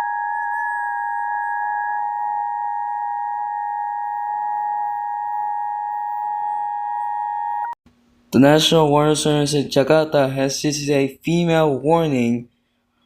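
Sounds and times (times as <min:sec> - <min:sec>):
two-tone alert signal: 0:00.0 - 0:07.8.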